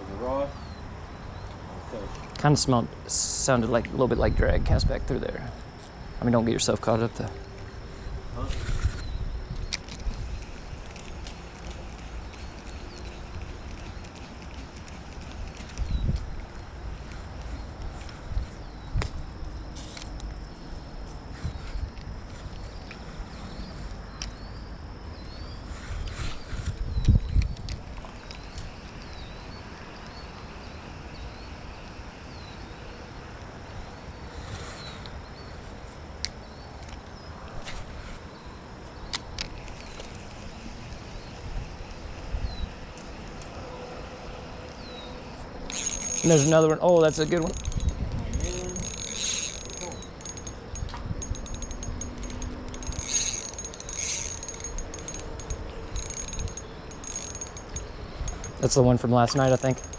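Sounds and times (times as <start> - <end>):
rushing outdoor background noise: 0.0 - 59.9
small bird chirping: 44.8 - 59.9
reel buzzing: 45.6 - 58.8, 59.4 - 59.9
fishing reel clicking: 45.7 - 59.9.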